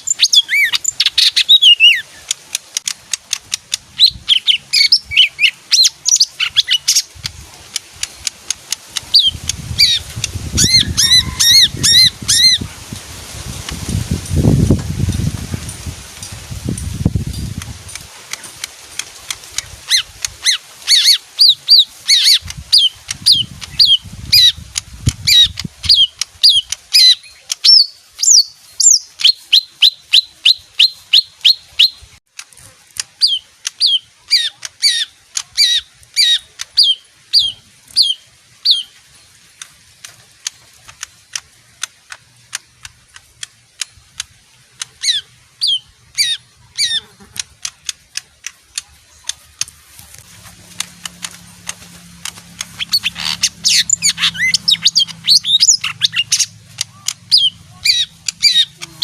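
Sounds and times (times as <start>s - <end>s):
bird calling sharp notes: 0.0s - 12.8s, 18.0s - 32.2s, 33.0s - 59.0s
low rustle: 12.1s - 26.4s.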